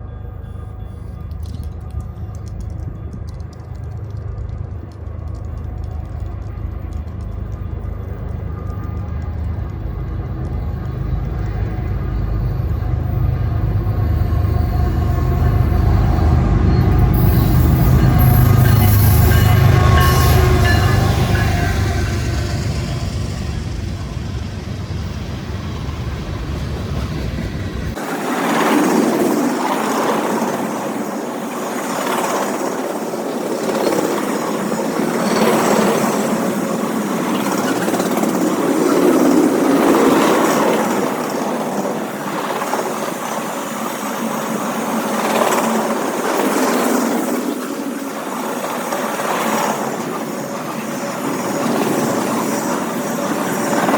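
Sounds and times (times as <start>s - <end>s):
train low rumble: 0.0s - 28.7s
railcars rolling past: 0.0s - 53.9s.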